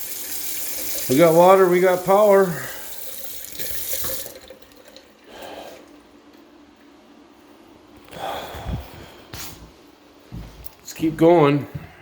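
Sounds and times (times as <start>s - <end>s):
water running from faucet into sink: 0.0s - 5.2s.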